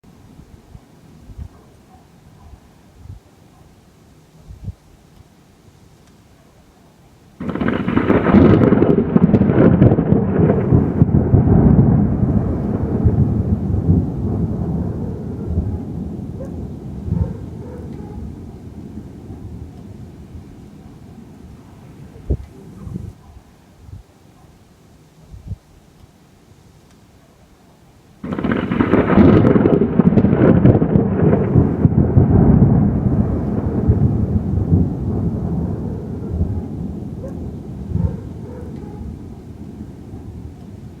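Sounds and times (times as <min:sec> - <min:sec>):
thunder clap and rumble: 0:07.4 - 0:23.2, 0:28.2 - 0:41.0.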